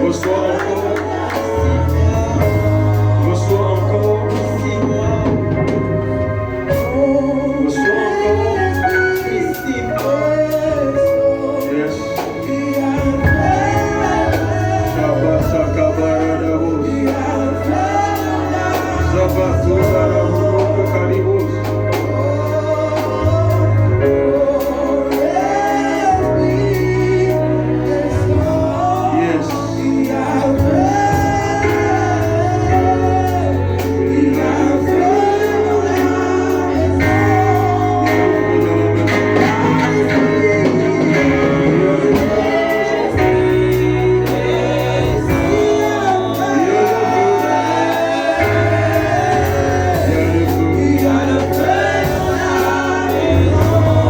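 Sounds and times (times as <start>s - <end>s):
gospel worship music: 0.0s - 54.0s.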